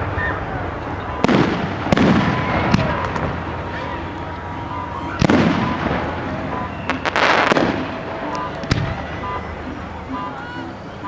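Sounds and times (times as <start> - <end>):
fireworks bang with rumbling echo: 0.0 - 3.8, 5.2 - 9.2
fireworks crack: 0.0 - 9.2.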